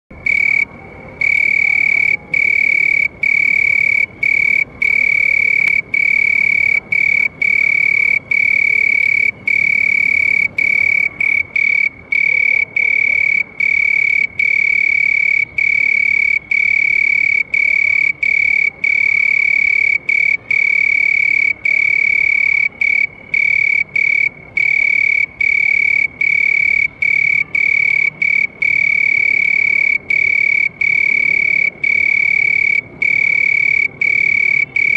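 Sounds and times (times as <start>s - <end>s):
cricket chirping: 0.1s - 34.9s.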